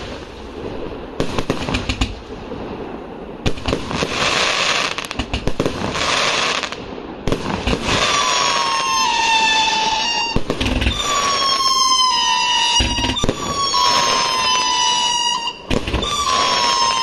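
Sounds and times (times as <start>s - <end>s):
firework launch pops and thumps: 1.2s - 2.2s, 3.4s - 8.2s, 10.4s - 11.2s, 12.7s - 13.6s, 15.7s - 16.6s
firework whistles: 3.5s - 17.0s.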